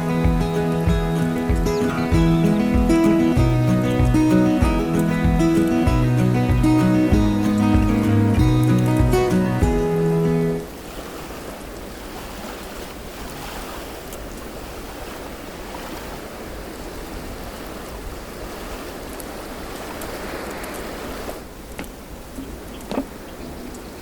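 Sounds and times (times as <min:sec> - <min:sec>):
background music: 0:00.0 - 0:10.6
sea waves washing onto shore: 0:00.0 - 0:24.0.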